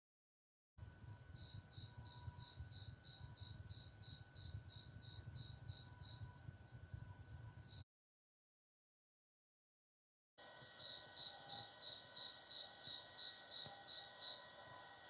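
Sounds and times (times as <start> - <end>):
faint steady whine: 0.8 - 7.8, 10.4 - 15.0
low hum: 0.8 - 7.8
insect chirping: 1.1 - 7.8, 10.4 - 15.0.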